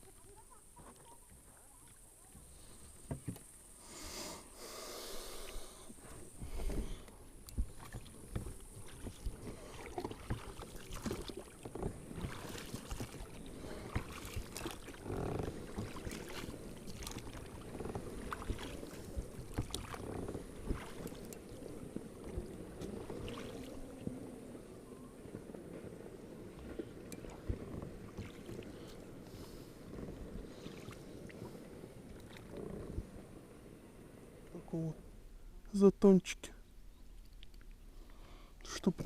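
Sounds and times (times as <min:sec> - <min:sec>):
knocks and clicks in a boat: 0:00.0 - 0:03.5, 0:06.4 - 0:24.3, 0:25.2 - 0:31.0
low water wash: 0:00.0 - 0:35.8.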